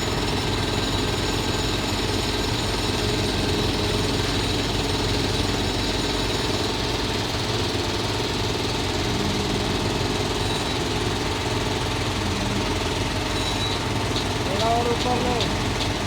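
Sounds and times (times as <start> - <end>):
diesel engine under load: 0.0 - 16.0.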